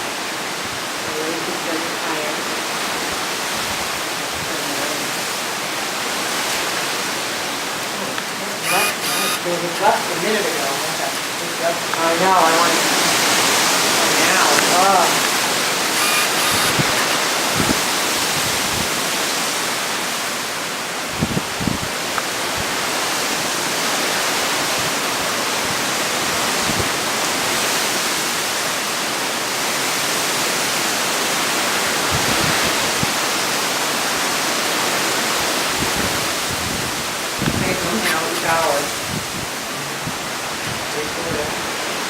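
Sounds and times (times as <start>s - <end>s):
hurricane wind: 0.0s - 8.7s, 9.4s - 42.0s
heavy rain: 0.0s - 42.0s
gusts buffeting microphone: 16.7s - 19.4s, 21.1s - 22.8s, 32.1s - 33.2s, 35.7s - 41.8s.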